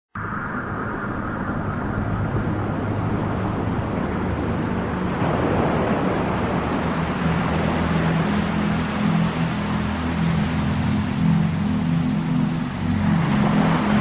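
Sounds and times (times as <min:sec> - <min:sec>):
low held tones: 0:00.1 - 0:05.2.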